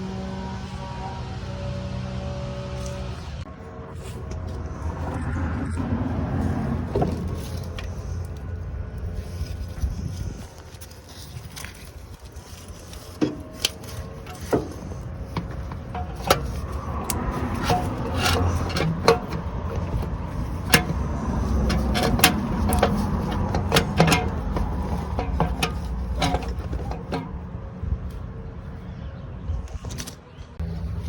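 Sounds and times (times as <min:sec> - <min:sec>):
steady low rumble: 0:00.0 - 0:29.8
hand tools clicking and knocking: 0:10.6 - 0:27.4.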